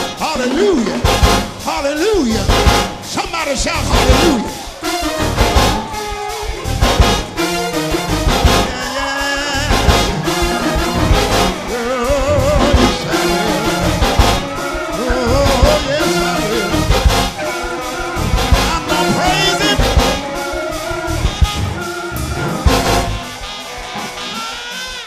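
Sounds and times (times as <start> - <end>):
live gospel band playing: 0.0 - 25.0.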